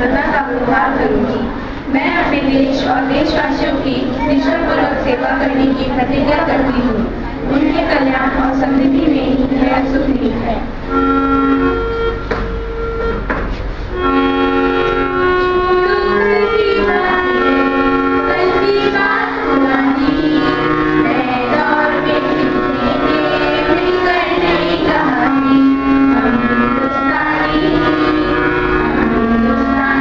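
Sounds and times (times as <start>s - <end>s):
instrument holding notes: 0.0s - 30.0s
person singing: 15.8s - 30.0s.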